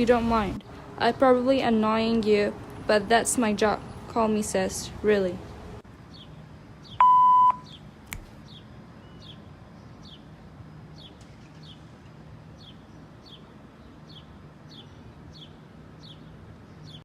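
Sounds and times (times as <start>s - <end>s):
bird chirping: 6.0s - 10.3s, 12.6s - 17.0s
electronic beep: 7.0s - 7.7s
sharp click: 8.1s - 8.4s.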